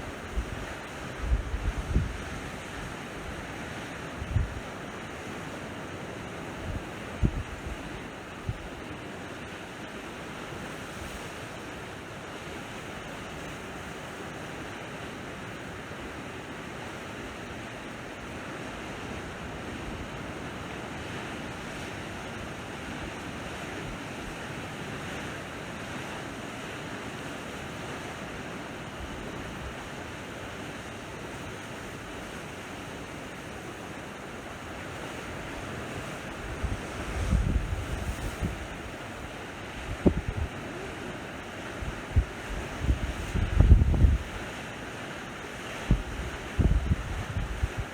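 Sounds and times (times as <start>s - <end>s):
sea waves washing onto shore: 0.0s - 47.9s
wind buffeting microphone: 0.2s - 2.4s, 35.3s - 40.7s, 41.8s - 44.4s, 45.8s - 47.9s.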